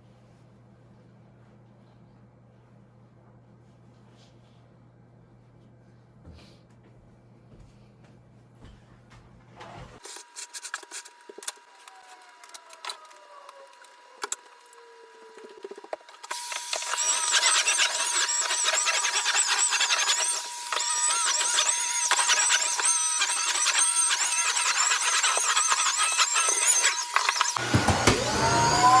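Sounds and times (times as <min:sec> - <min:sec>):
vacuum cleaner whining: 0:11.3 - 0:29.0.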